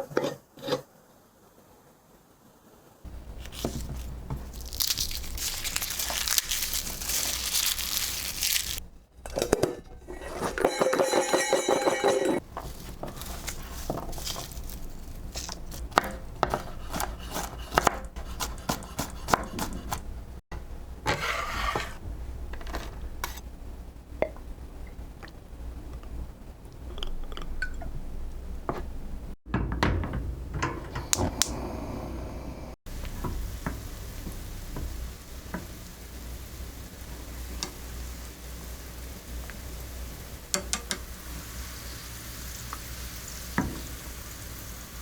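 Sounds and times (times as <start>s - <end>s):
crinkling and tearing: 3.3s - 8.8s, 12.7s - 15.9s
steady low hum: 22.0s - 35.4s.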